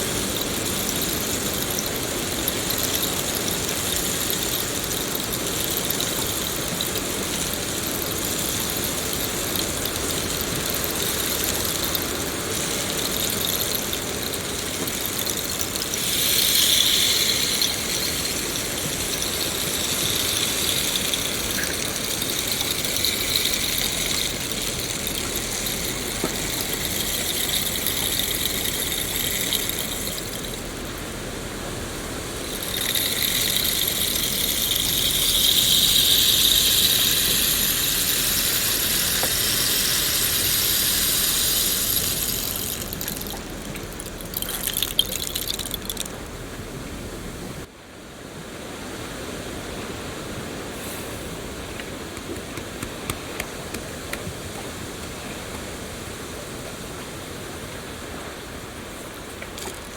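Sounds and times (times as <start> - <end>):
sharp drips: 0.0 - 47.0, 59.4 - 59.9
rain hissing: 0.0 - 47.7, 50.7 - 54.1
rain patter: 0.0 - 47.7.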